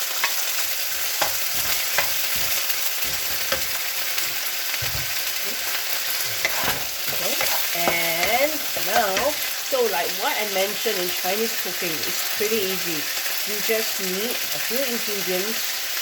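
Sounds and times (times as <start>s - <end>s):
food sizzling in frying pan: 0.0s - 16.0s
utensil scraping pan: 0.2s - 9.6s.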